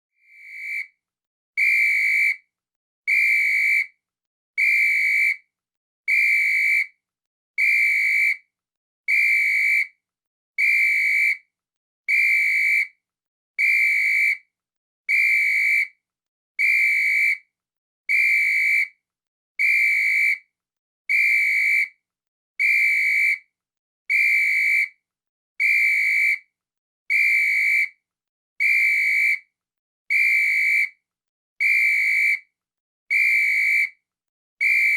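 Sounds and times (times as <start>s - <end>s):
whistle blasts: 0.2s - 1.0s, 1.6s - 2.4s, 3.1s - 3.9s, 4.6s - 5.4s, 6.1s - 7.0s, 7.6s - 8.4s, 9.1s - 10.0s, 10.6s - 11.4s, 12.1s - 12.9s, 13.6s - 14.4s, 15.1s - 16.0s, 16.6s - 17.4s, 18.1s - 19.0s, 19.6s - 20.5s, 21.1s - 22.0s, 22.6s - 23.4s, 24.1s - 25.0s, 25.6s - 26.5s, 27.1s - 28.0s, 28.6s - 29.5s, 30.1s - 31.0s, 31.6s - 32.5s, 33.1s - 34.0s, 34.6s - 34.9s.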